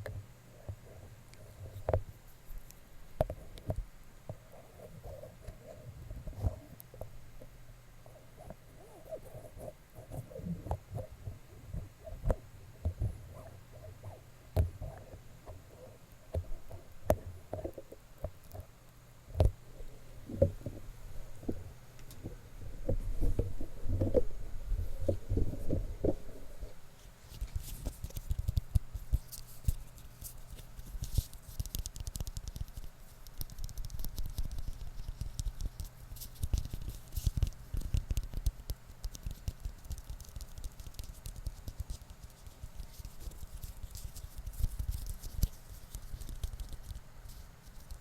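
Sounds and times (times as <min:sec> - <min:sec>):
fingertip tapping and scratching: 0:00.7 - 0:07.5, 0:08.1 - 0:18.7, 0:27.3 - 0:48.0.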